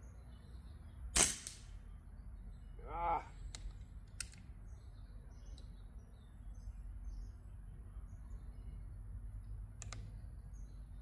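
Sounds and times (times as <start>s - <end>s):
low outdoor rumble: 0.0s - 11.0s
small birds chirping: 0.0s - 11.0s
sharp click: 9.8s - 10.1s.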